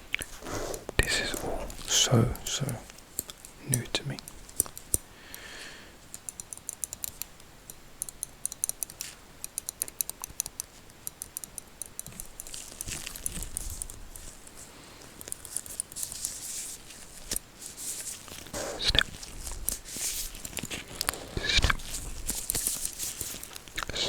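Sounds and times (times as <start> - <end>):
soft brushing rustling: 0.2 - 4.6, 12.2 - 23.8.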